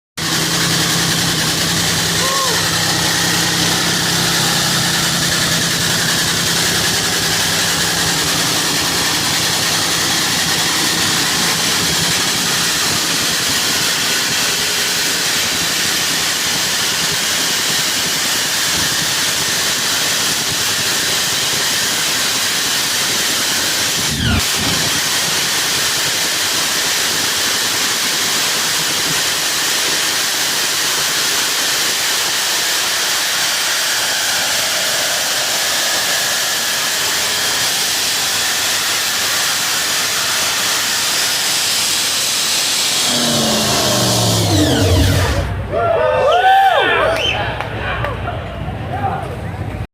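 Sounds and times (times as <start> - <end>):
drag racing engine roar: 0.2 - 46.1.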